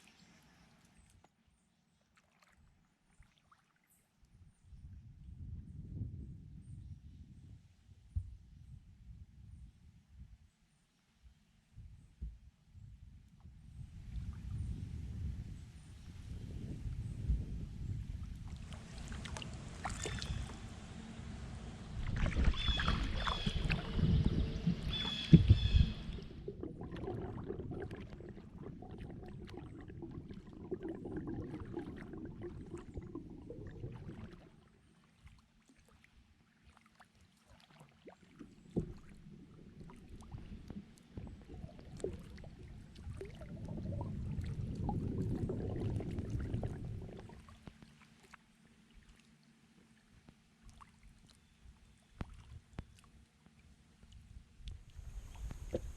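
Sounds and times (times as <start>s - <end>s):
water washing around boat: 18.1s - 51.4s
kayak paddle strokes: 18.4s - 30.7s, 54.6s - 55.9s.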